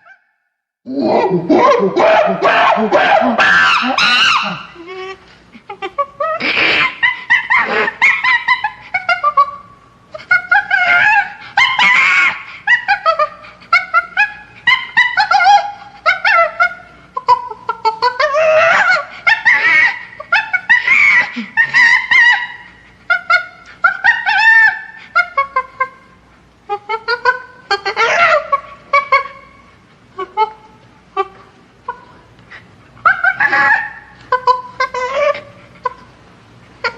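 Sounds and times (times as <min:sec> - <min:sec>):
chimpanzee screaming: 0:00.9 - 0:05.2, 0:06.2 - 0:09.6, 0:10.2 - 0:26.0, 0:26.9 - 0:29.5, 0:33.0 - 0:36.0.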